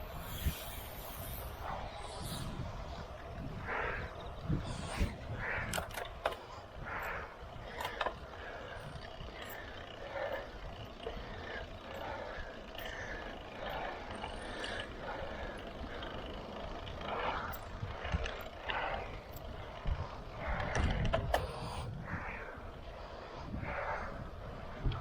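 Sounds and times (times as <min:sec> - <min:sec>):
road traffic: 0:00.0 - 0:24.8
wind rumbling on microphone: 0:00.0 - 0:25.0.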